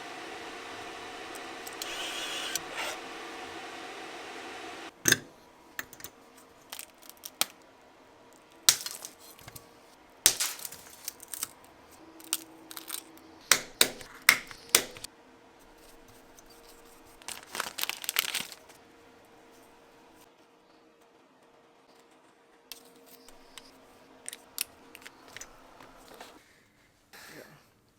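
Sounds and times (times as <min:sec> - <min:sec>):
tools tapping and clicking: 0:13.5 - 0:15.1.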